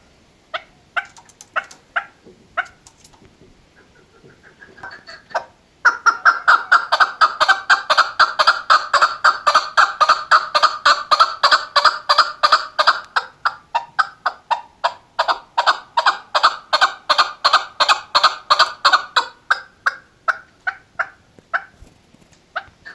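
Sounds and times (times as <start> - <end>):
partridge clucking calls: 0.0 - 21.9, 22.5 - 22.9.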